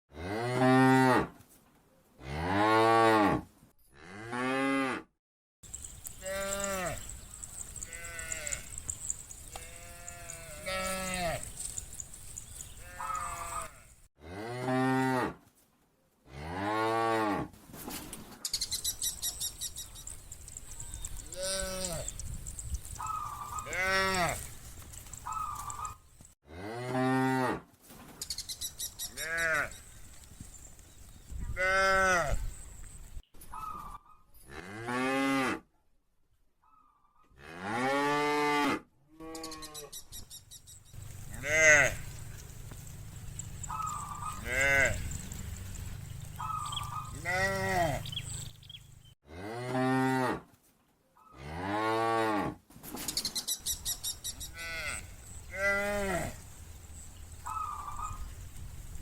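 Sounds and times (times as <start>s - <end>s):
cows mooing: 5.7s - 15.3s, 21.0s - 24.6s, 41.0s - 50.4s.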